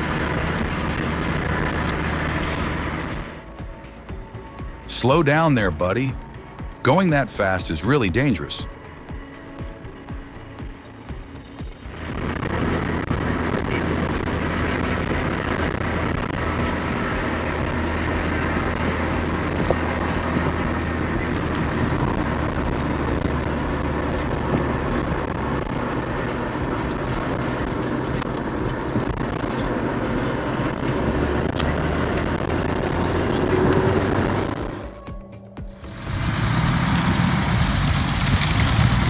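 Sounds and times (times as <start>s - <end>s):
road noise: 0.0s - 3.6s, 12.0s - 34.8s, 35.9s - 39.0s
truck engine drone: 0.0s - 39.0s.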